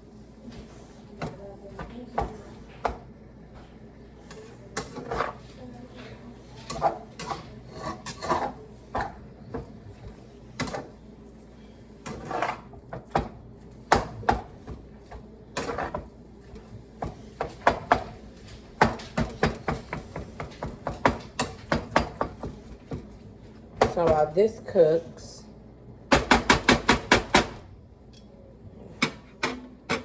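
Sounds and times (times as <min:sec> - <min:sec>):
utensil scraping a pan: 0:04.2 - 0:24.3.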